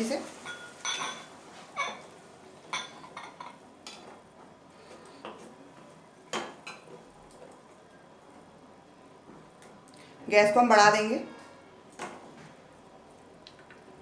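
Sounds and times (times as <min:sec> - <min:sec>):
food frying: 0:00.0 - 0:04.5.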